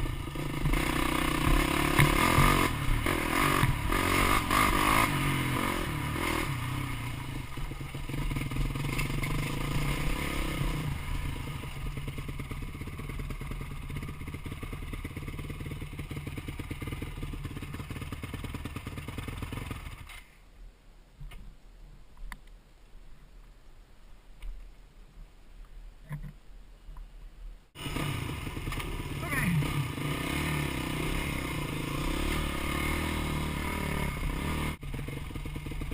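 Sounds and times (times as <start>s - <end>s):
dirt bike engine running: 0.0s - 20.1s, 27.8s - 35.9s.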